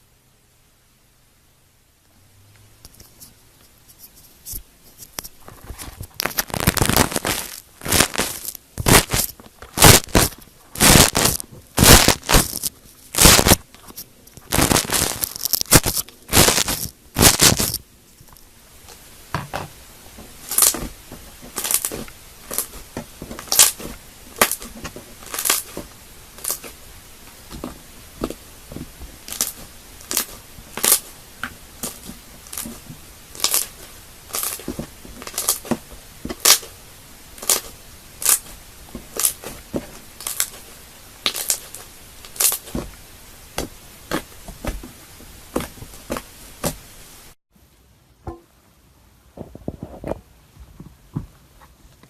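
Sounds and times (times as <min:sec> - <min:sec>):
crunchy slime squeezed by hand: 0:06.1 - 0:13.7, 0:14.4 - 0:17.8.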